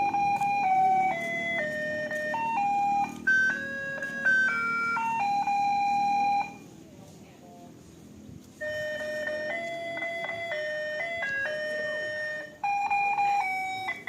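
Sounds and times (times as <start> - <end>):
tinny electronic jingle melody: 0.0 - 6.7, 8.6 - 14.0
low background noise: 0.0 - 14.0.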